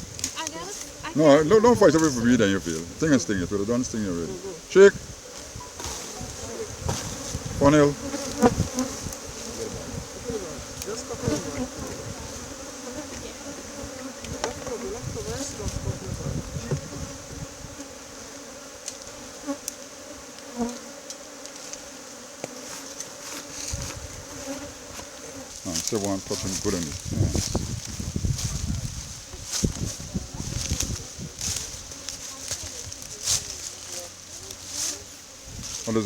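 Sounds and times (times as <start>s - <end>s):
bees buzzing: 0.4s - 36.0s
handling knocks and thumps: 5.6s - 7.4s.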